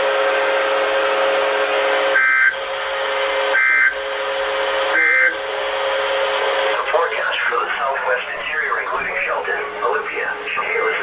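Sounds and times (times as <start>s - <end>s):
steady buzzing hum: 0.0s - 11.0s
two-tone data bursts: 5.0s - 5.4s.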